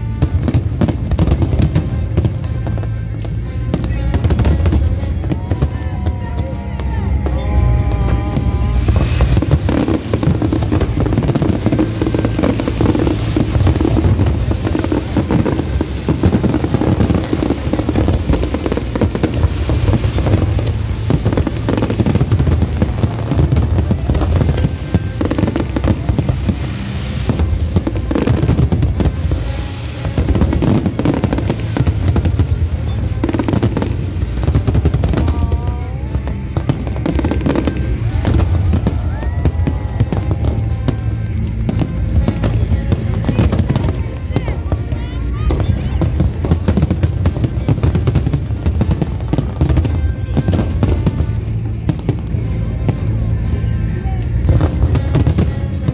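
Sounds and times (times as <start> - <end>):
fireworks bangs and crackles: 0.0 - 55.9
music playing: 0.0 - 55.9.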